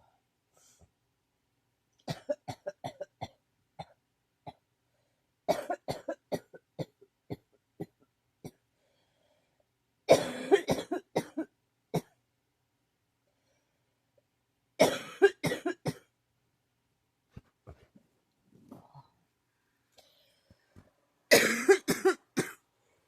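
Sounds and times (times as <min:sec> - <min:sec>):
person coughing: 0:05.5 - 0:07.4, 0:10.1 - 0:12.1, 0:14.8 - 0:16.1, 0:21.3 - 0:22.6.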